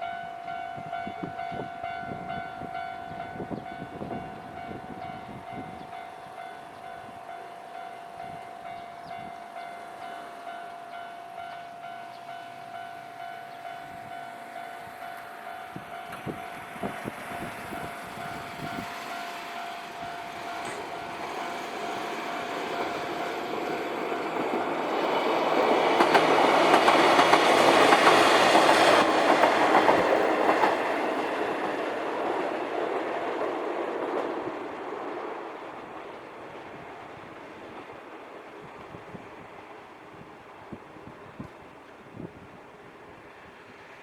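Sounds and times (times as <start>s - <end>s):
level-crossing warning bell: 0.0s - 31.4s
electric train passing: 0.0s - 44.0s.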